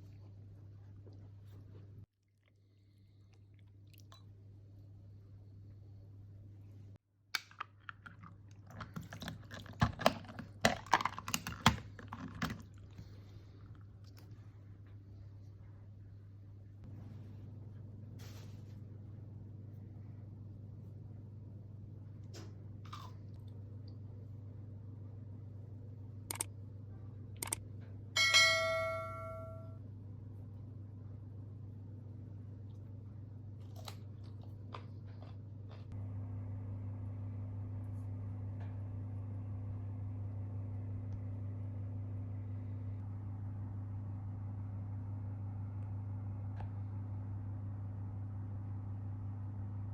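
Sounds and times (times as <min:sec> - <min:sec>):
crunching pickled turnip: 0:22.8 - 0:23.6, 0:33.5 - 0:36.0
short clicks: 0:26.3 - 0:26.5
bell-like ring: 0:28.2 - 0:29.8.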